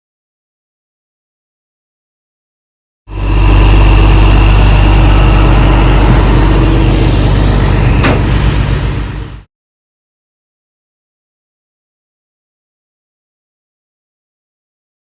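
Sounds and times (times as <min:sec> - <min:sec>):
large engine running: 0:03.1 - 0:09.5.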